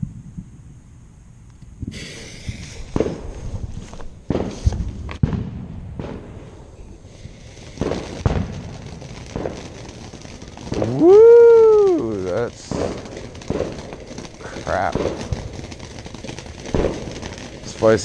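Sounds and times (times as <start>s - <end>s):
fireworks bangs and pops: 1.5s - 18.0s
man whooping shout: 10.8s - 12.4s.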